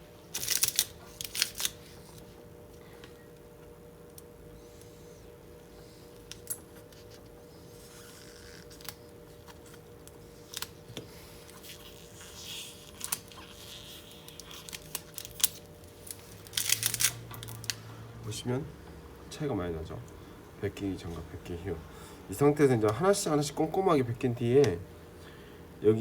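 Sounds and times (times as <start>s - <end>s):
plastic film peeling: 0.3s - 2.3s, 6.2s - 17.9s
crinkling rasps: 8.1s - 17.8s.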